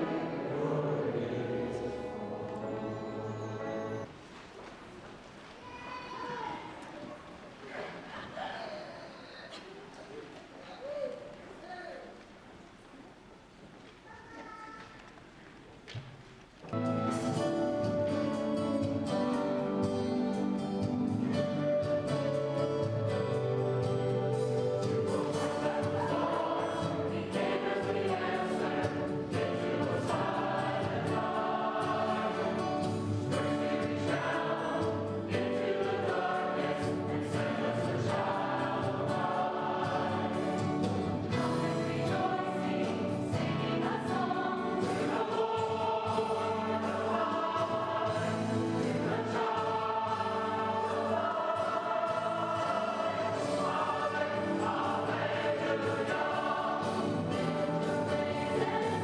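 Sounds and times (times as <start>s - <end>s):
church choir singing: 0.0s - 4.1s, 16.7s - 59.0s
musical accompaniment: 16.8s - 59.0s.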